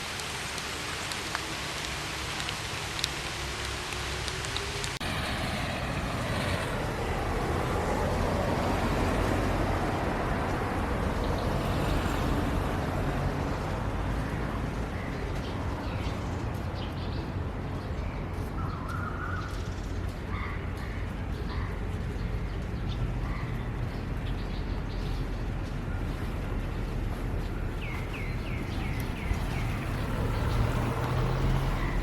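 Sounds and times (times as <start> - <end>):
rain: 0.0 - 32.0
road traffic rumble: 0.0 - 32.0
scattered ticks: 0.2 - 5.0.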